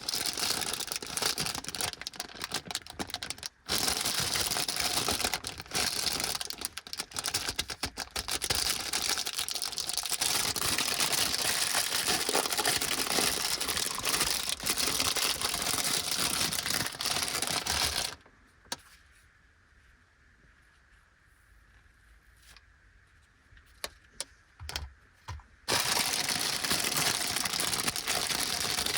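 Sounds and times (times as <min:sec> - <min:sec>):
plastic wrapper crinkling: 0:00.0 - 0:18.2, 0:25.7 - 0:28.9.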